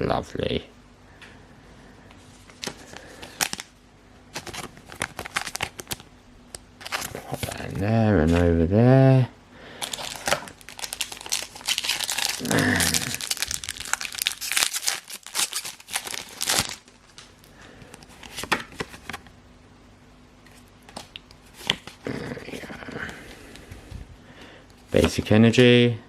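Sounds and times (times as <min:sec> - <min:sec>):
foil wrapper crinkling and tearing: 0:02.5 - 0:03.7, 0:04.3 - 0:06.1, 0:06.8 - 0:07.8, 0:09.8 - 0:19.2.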